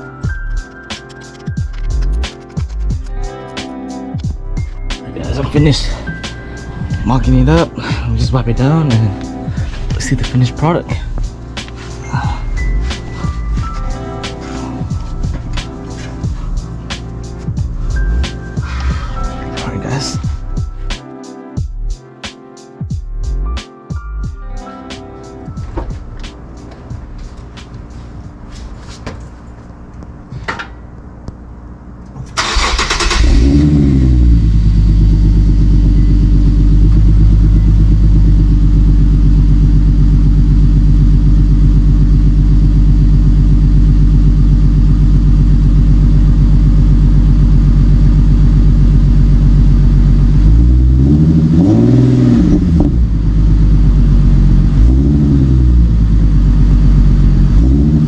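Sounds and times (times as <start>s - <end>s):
car engine starting and idling: 4.2s - 20.9s, 25.6s - 58.0s
engine revving: 32.4s - 58.0s.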